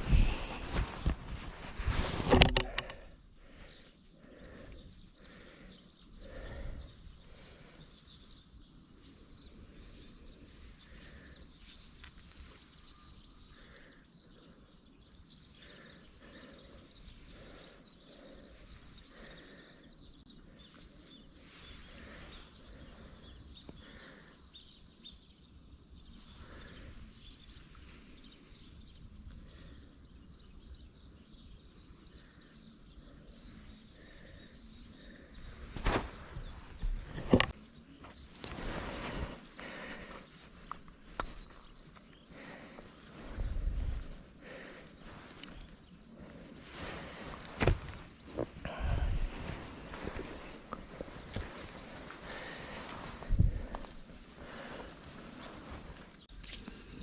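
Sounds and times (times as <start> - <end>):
faint outdoor ambience: 0.0 - 57.0.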